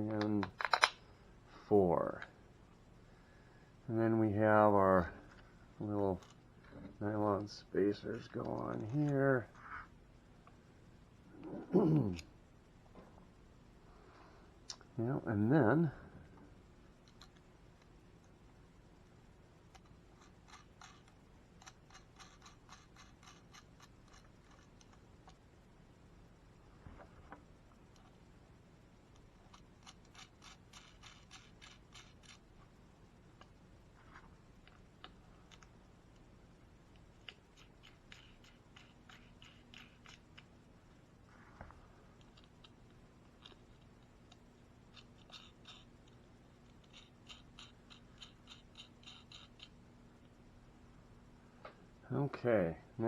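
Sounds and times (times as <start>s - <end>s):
clicks of small parts handled: 0.1s - 1.0s.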